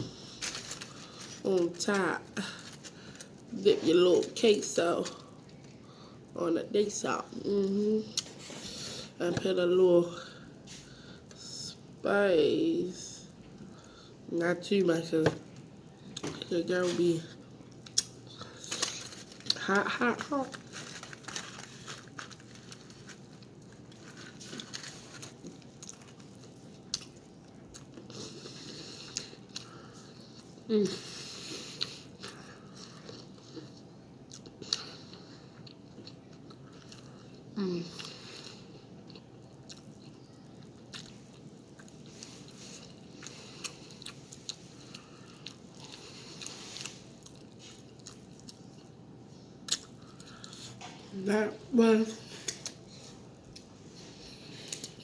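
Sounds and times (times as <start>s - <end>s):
person chewing with wet clicks: 17.7s - 18.5s, 22.3s - 30.6s, 31.7s - 49.0s, 49.6s - 51.1s, 54.5s - 55.0s.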